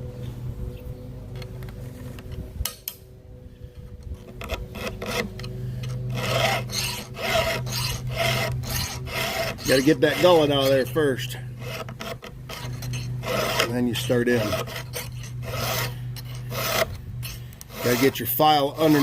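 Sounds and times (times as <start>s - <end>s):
file strokes on chainsaw chain: 4.5s - 19.0s.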